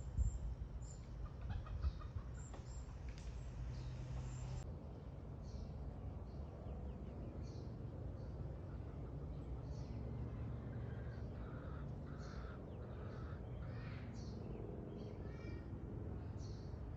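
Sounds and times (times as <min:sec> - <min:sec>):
bird harsh calls: 0:10.6 - 0:14.4.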